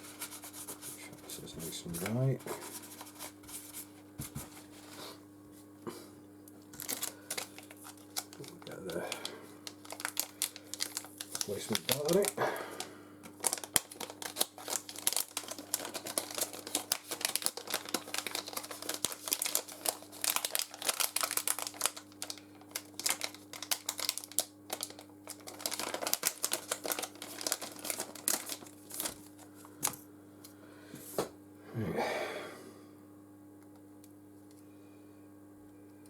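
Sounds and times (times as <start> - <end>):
steady low hum: 0.0 - 36.0
plastic packaging crinkling: 6.6 - 12.5, 13.2 - 30.0.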